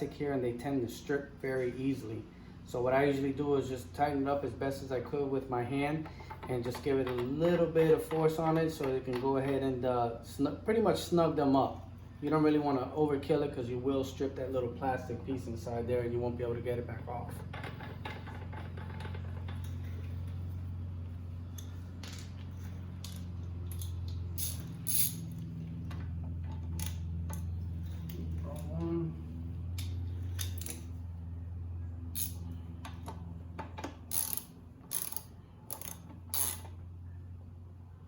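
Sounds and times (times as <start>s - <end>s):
steady low hum: 0.0s - 38.0s
socket ratchet clicking: 23.0s - 25.4s, 32.1s - 33.2s, 33.8s - 36.8s.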